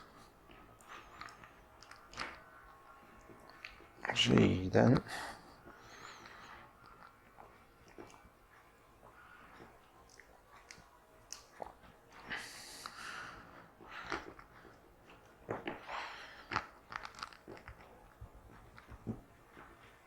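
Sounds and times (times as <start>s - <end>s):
plastic and cable rustling: 16.5s - 19.8s.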